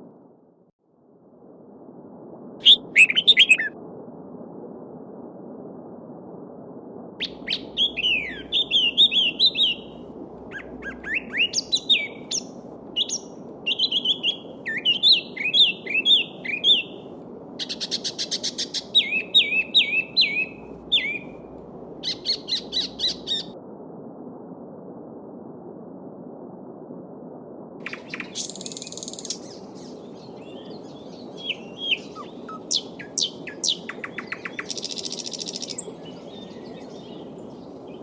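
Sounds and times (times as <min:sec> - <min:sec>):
songbird singing: 0:02.6 - 0:03.7, 0:07.2 - 0:23.6, 0:27.8 - 0:38.0.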